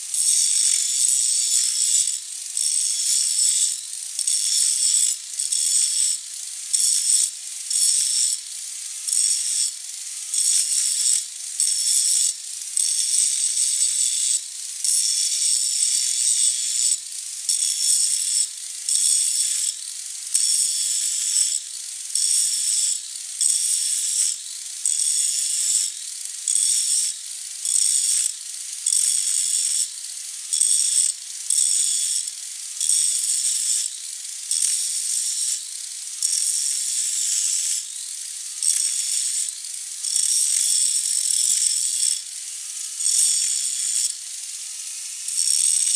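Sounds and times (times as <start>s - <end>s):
power grinder grinding steel: 44.8s - 45.9s.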